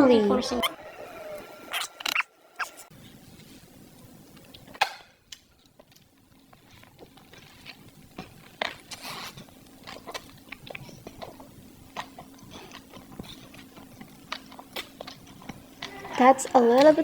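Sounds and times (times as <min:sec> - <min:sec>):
faint steady hum: 0:00.0 - 0:17.0
person chewing wetly: 0:05.3 - 0:16.2.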